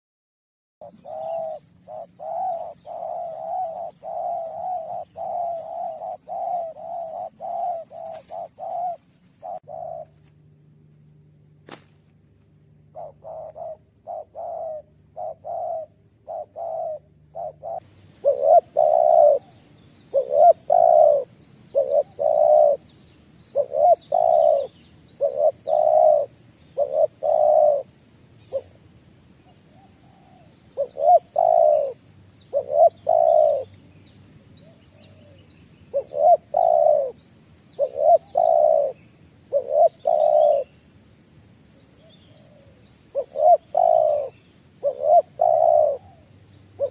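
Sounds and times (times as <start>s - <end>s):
bird cooing: 0.8s - 10.4s, 12.8s - 28.8s, 29.4s - 40.8s, 41.7s - 46.9s.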